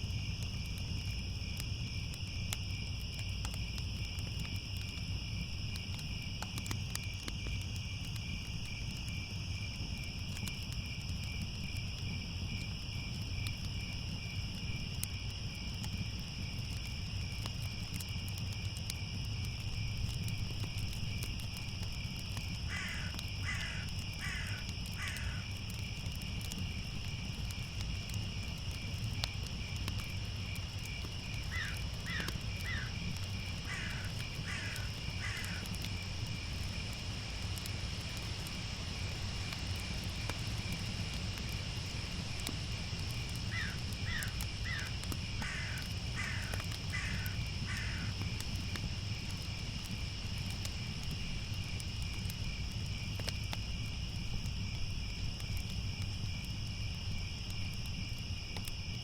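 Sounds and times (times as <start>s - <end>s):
crickets chirping: 0.0s - 59.0s
crow cawing: 22.7s - 25.4s, 31.5s - 32.9s, 33.7s - 35.7s, 43.5s - 48.1s.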